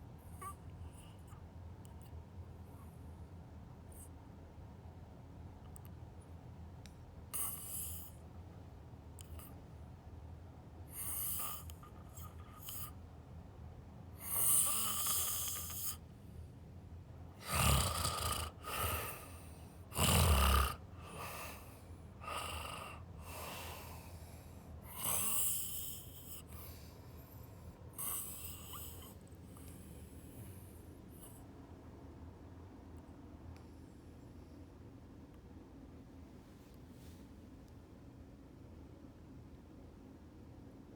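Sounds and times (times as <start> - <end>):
snoring: 7.4 - 8.2, 11.0 - 12.9, 14.2 - 16.0, 17.4 - 24.2, 24.8 - 26.8, 27.9 - 30.0.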